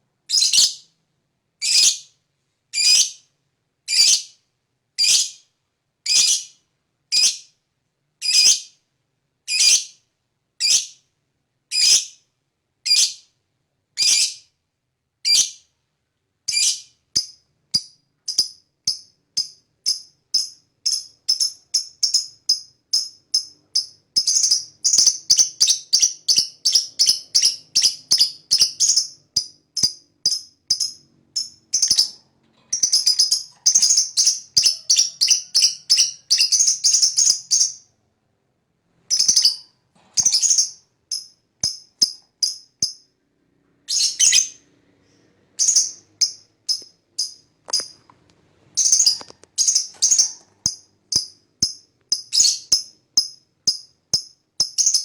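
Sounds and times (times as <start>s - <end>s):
lovebird chirping and chattering: 0.3s - 0.8s, 1.6s - 2.1s, 2.8s - 3.2s, 3.9s - 4.3s, 5.0s - 5.4s, 6.1s - 6.5s, 8.2s - 8.7s, 12.9s - 13.2s, 14.0s - 14.4s, 15.2s - 15.6s, 16.5s - 37.9s, 39.1s - 43.0s, 43.9s - 48.0s, 48.8s - 55.0s.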